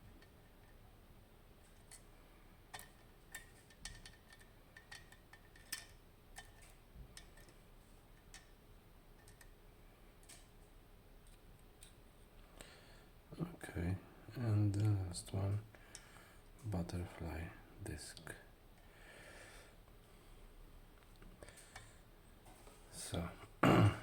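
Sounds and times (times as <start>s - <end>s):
metallic clicks of lock parts: 2.7s - 7.6s.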